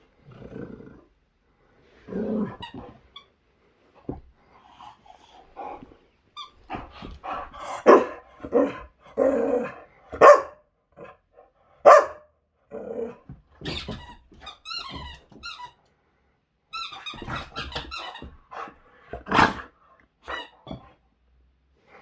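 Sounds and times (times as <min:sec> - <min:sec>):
dog barking: 0:07.8 - 0:08.7, 0:10.2 - 0:10.6, 0:11.8 - 0:12.3
squeaky toy squeaking: 0:16.7 - 0:18.3.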